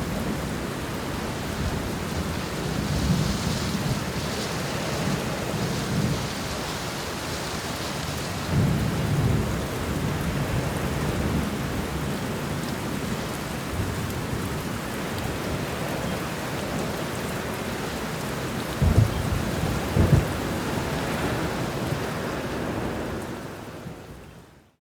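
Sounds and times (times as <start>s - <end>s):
heavy rain: 0.0s - 24.8s
rolling thunder: 18.7s - 23.1s.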